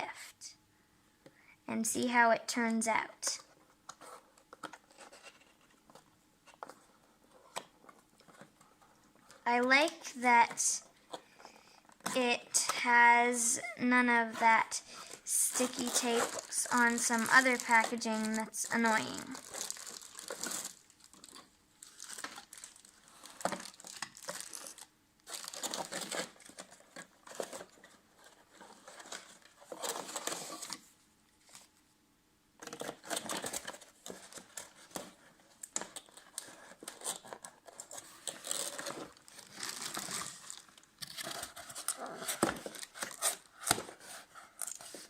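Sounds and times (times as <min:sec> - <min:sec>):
cardboard and styrofoam rustling: 0:14.2 - 0:31.7, 0:32.6 - 0:45.0.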